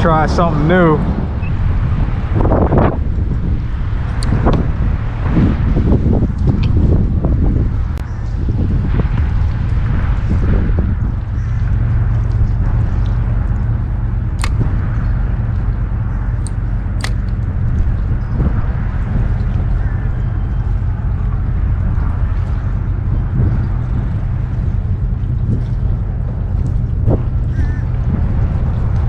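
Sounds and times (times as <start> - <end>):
wind buffeting microphone: 0.0 - 29.0
sharp clicks: 14.3 - 18.3.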